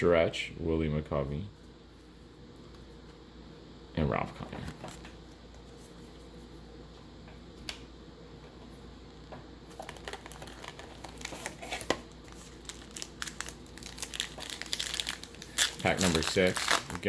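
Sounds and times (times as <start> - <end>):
wrapper crinkling: 9.7 - 17.0.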